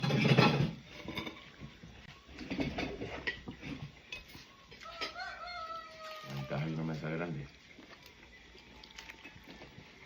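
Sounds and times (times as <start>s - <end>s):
dishes and cutlery clinking: 0.0s - 7.0s.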